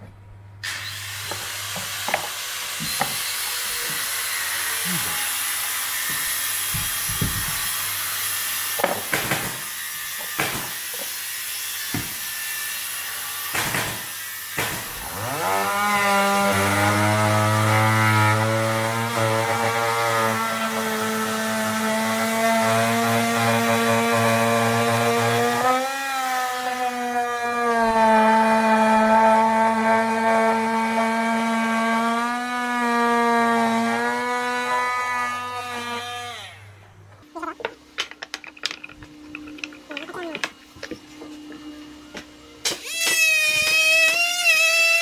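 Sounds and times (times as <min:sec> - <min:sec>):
multi-tool cutting into wood: 0:00.6 - 0:36.6.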